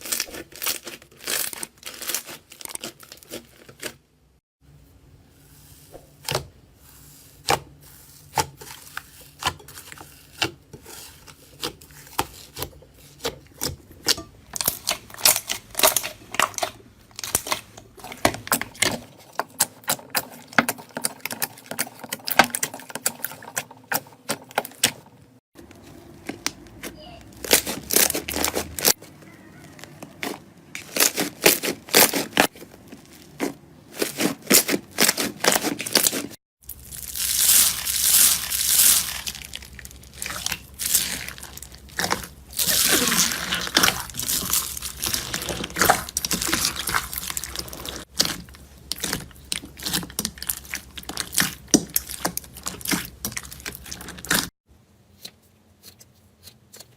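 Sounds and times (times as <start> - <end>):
slime popping and crackling: 34.1 - 54.5.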